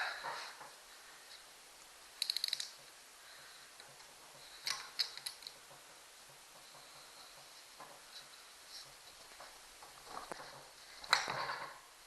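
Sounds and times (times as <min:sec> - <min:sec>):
ratchet wrench clicking: 0:02.2 - 0:02.7
sharp metallic clicks: 0:02.2 - 0:02.8.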